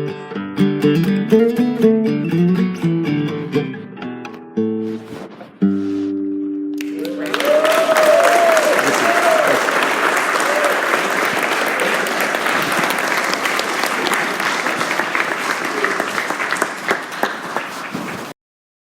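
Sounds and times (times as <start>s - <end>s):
audience applauding: 6.8s - 18.4s.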